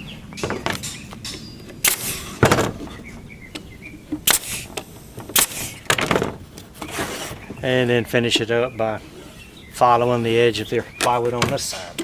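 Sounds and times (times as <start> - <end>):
nail gun firing: 1.8 - 2.8, 4.2 - 4.7, 5.3 - 6.3.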